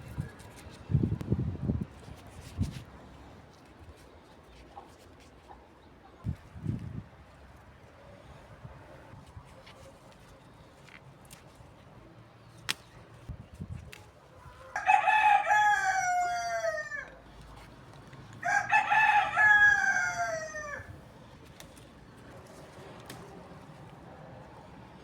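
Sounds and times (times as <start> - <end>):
rooster crowing: 14.5 - 17.2, 18.4 - 21.0.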